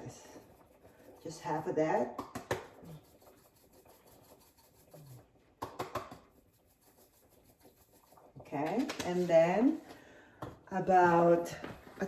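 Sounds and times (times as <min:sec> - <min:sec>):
dried herbs rubbing and scratching: 0:02.9 - 0:05.2, 0:06.2 - 0:09.9.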